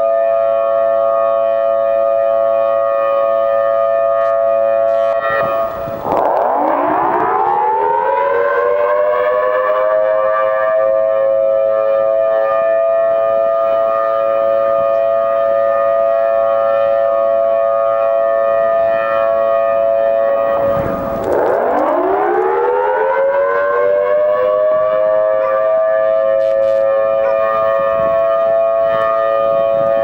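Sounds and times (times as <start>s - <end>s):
outdoor warning siren wailing: 0.0s - 30.0s.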